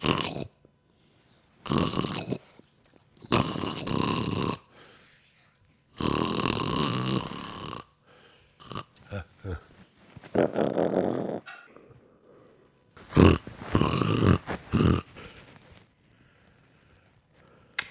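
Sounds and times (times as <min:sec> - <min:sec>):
person snoring: 0:00.0 - 0:00.5, 0:01.6 - 0:02.6, 0:03.2 - 0:05.0, 0:05.9 - 0:15.7.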